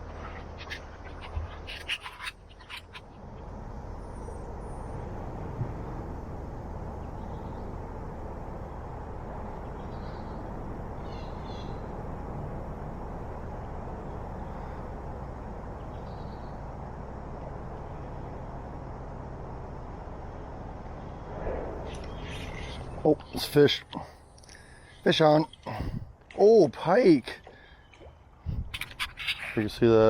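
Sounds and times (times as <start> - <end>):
high bird chirps: 21.9 - 23.4.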